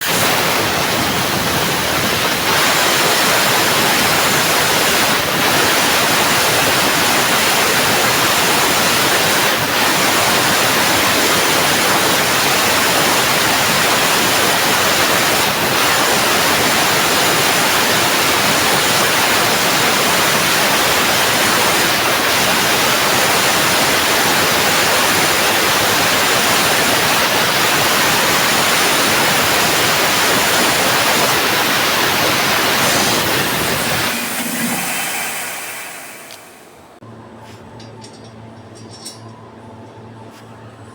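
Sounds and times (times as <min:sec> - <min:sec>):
laser cutter hissing: 0:00.0 - 0:10.2, 0:29.1 - 0:37.0.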